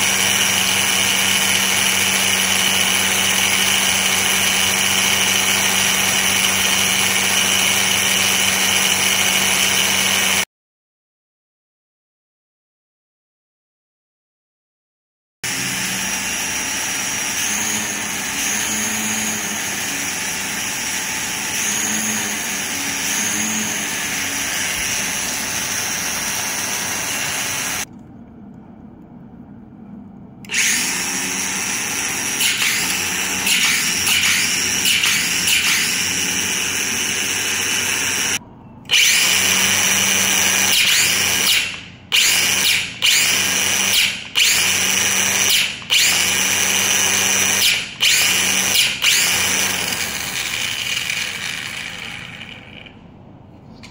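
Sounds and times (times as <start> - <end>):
string trimmer motor whining: 0.0 - 10.4, 30.5 - 53.0.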